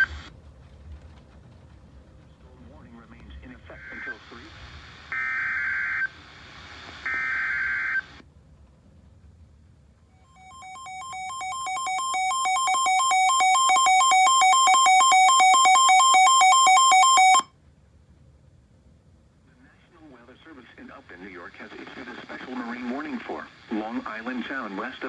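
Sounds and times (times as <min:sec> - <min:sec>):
fast electronic alarm beeping: 0:10.3 - 0:17.5
harsh digital data buzz: 0:10.4 - 0:17.4.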